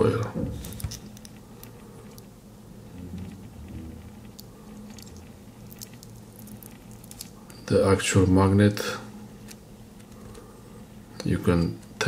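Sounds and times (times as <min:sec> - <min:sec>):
pin clicking and scraping small parts: 0:04.3 - 0:07.6.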